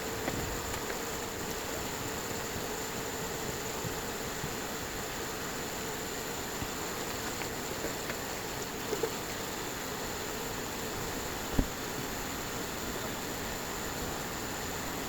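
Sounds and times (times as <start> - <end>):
short thump: 11.5 - 11.8.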